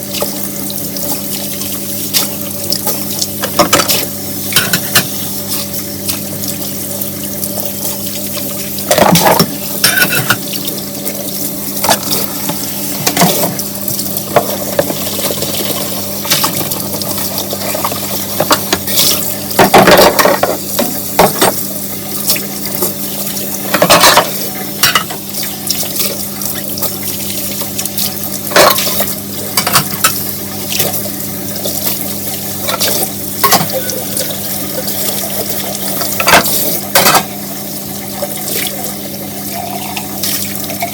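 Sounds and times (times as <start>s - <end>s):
tap water running: 0.0s - 40.9s
dishes and cutlery clattering: 9.0s - 10.4s, 36.2s - 37.3s.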